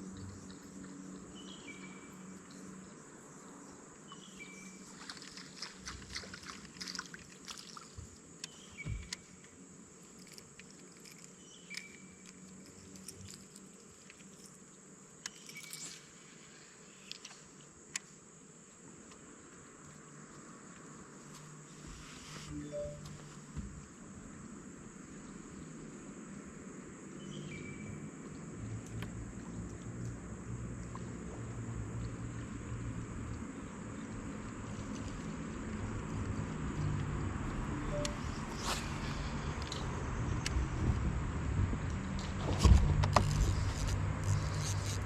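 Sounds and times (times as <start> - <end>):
faint steady hiss: 0.0 - 27.7
short high chirps: 22.5 - 23.2, 37.9 - 38.4.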